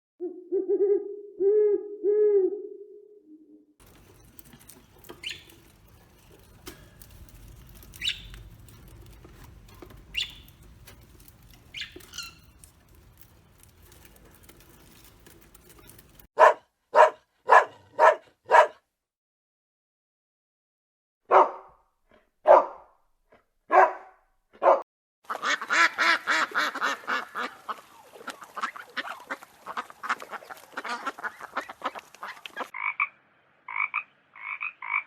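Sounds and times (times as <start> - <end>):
dog barking: 16.4 - 18.8, 21.3 - 21.8, 22.4 - 22.9, 23.7 - 24.8.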